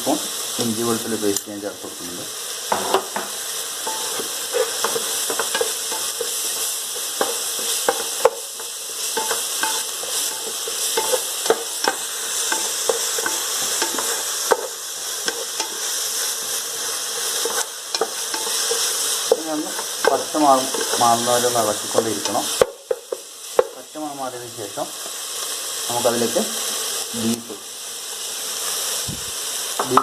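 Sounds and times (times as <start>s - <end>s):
onions sizzling in hot oil: 0.0s - 30.0s
utensil scraping a pan: 3.8s - 22.4s.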